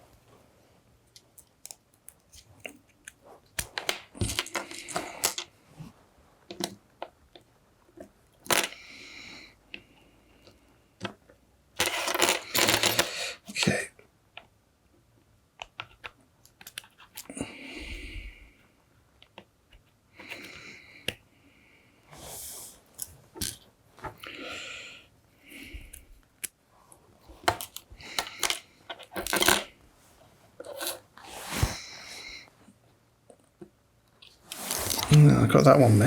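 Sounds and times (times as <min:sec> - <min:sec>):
scraping and rustling: 0:34.3 - 0:35.3.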